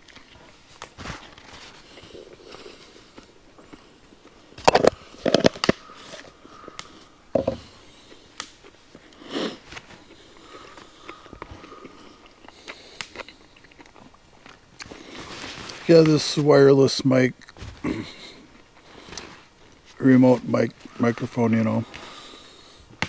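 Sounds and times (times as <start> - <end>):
breathy rustle: 0.2 - 13.7, 14.8 - 16.5, 17.5 - 23.0
microphone handling knocks: 7.4 - 7.7.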